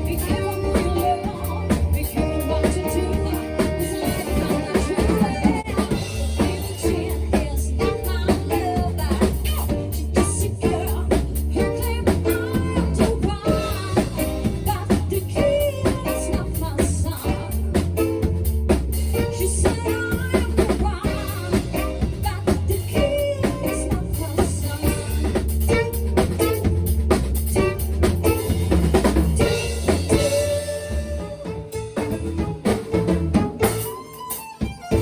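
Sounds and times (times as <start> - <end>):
person singing: 0.0 - 17.6, 29.4 - 31.8
drum kit beat: 0.0 - 35.0
live band playing: 0.0 - 35.0.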